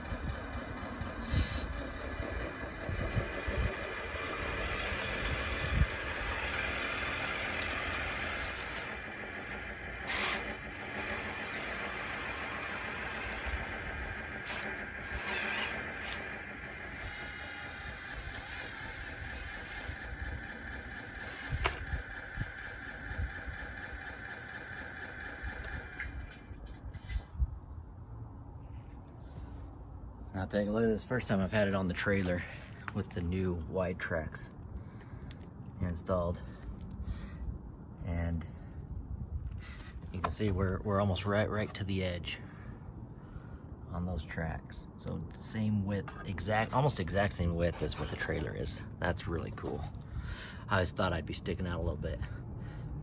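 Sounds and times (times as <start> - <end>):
electric motors whining: 0.0 - 26.8.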